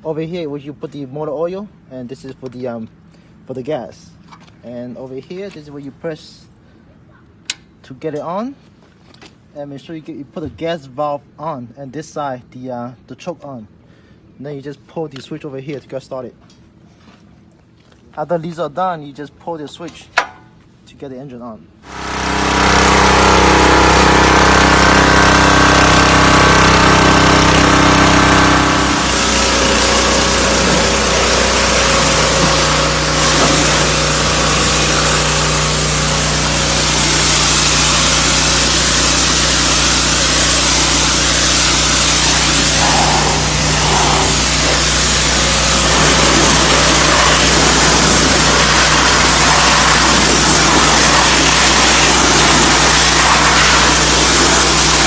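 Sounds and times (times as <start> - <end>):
pressure washer engine running: 21.8 - 55.0
water spraying hiss: 27.7 - 55.0.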